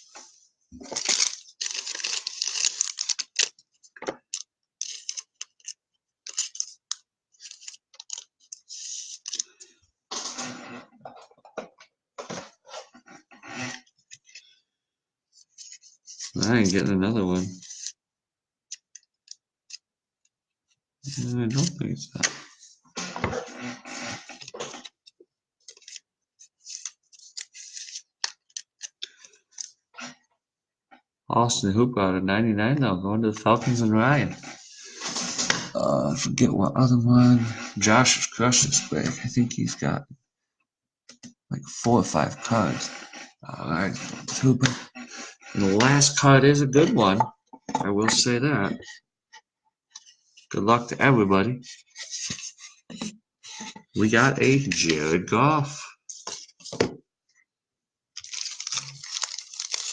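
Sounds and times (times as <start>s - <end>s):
cards rustling in plastic sleeves: 0.8s - 10.8s, 15.3s - 18.0s, 21.1s - 22.6s, 25.6s - 29.8s, 41.7s - 47.2s, 51.6s - 52.8s, 53.5s - 56.8s, 58.2s - 59.9s.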